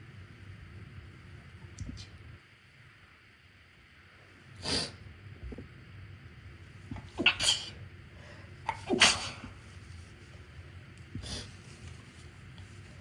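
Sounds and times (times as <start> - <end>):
person sneezing: 7.1 - 7.8, 8.7 - 9.6.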